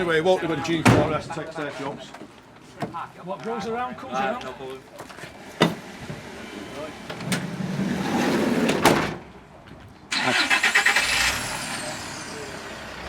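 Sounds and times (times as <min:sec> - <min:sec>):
vehicle engine starting and running: 0:10.1 - 0:13.0.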